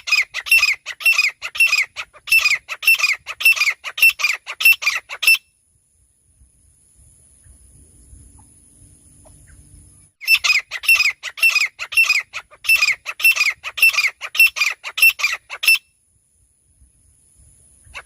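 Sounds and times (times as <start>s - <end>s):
francolin calling: 0.0s - 5.6s, 9.1s - 16.0s.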